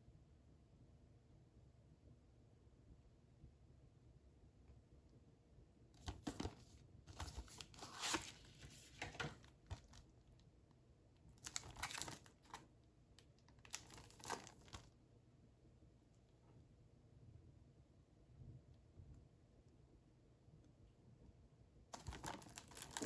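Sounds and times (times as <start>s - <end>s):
plastic wrapping crinkling: 11.4s - 12.6s, 13.6s - 14.9s, 22.0s - 23.0s.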